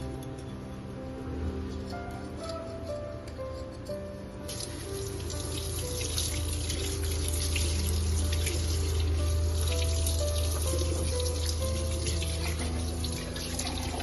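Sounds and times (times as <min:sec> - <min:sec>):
running water: 0:04.5 - 0:14.0.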